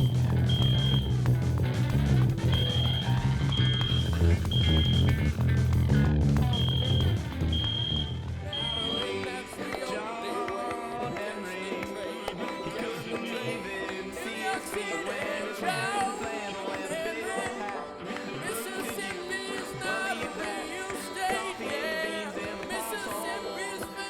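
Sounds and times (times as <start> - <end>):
person singing over instruments: 8.4 - 24.0.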